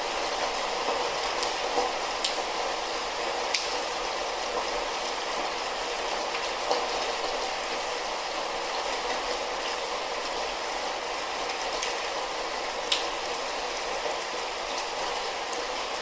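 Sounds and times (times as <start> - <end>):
light rain falling: 0.0 - 16.0.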